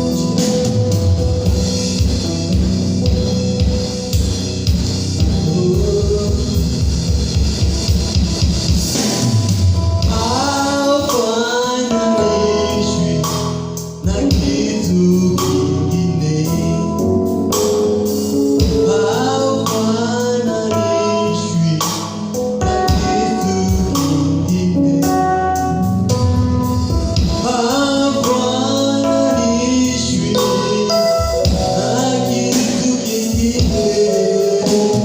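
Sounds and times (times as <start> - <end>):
band with drums guitar and bass: 0.0 - 35.0
gospel singing: 5.2 - 7.0, 10.0 - 17.0, 18.6 - 22.0, 27.2 - 35.0.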